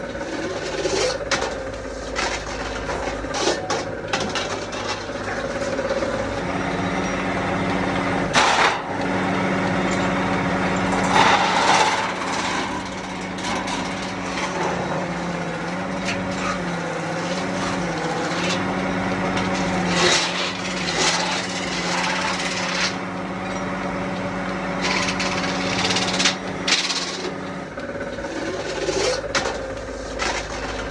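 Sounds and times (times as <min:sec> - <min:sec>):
machine motor humming: 0:00.0 - 0:30.9.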